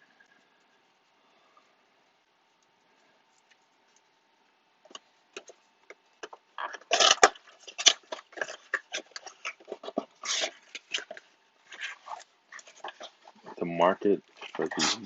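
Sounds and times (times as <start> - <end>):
wrapper crinkling and tearing: 6.6 - 13.2.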